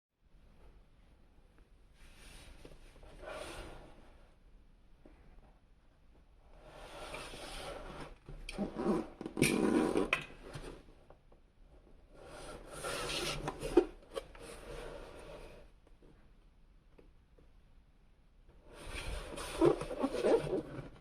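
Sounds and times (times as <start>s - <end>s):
cardboard and plastic rubbing: 18.8s - 21.0s.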